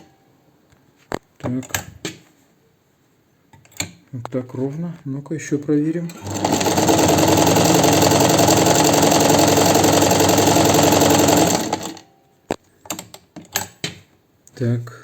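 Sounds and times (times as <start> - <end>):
sewing machine running: 6.1 - 12.1.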